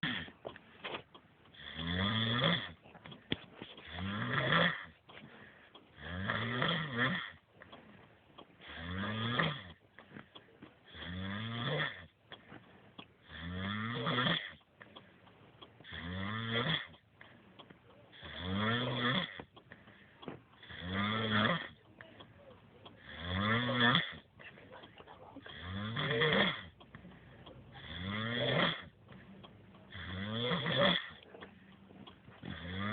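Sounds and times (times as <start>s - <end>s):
man snoring: 0.0s - 0.4s, 1.5s - 2.8s, 3.8s - 4.9s, 5.9s - 7.4s, 8.6s - 9.8s, 10.9s - 12.1s, 13.2s - 14.6s, 15.8s - 17.0s, 18.1s - 19.5s, 20.6s - 21.8s, 23.0s - 24.2s, 25.4s - 26.8s, 27.8s - 29.0s, 29.9s - 31.2s, 32.4s - 32.9s
quiet breathing: 0.0s - 32.9s.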